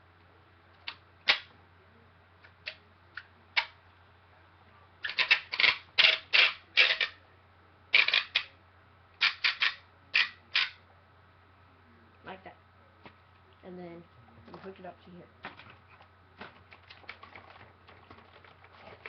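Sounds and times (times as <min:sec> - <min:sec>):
plastic parts knocking and clicking: 0:15.4 - 0:19.0.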